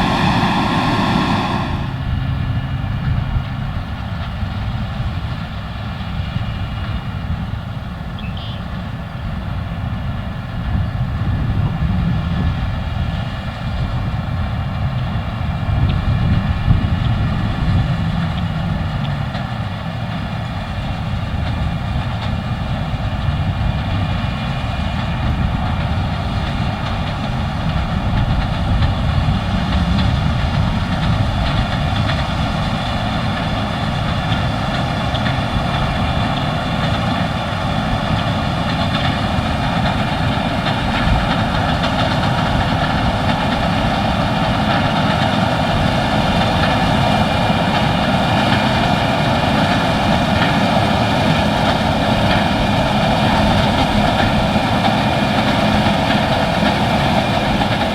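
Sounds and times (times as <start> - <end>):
steady whining tones: 0.0 - 3.5, 25.3 - 57.9
combine harvester drone: 0.0 - 57.9.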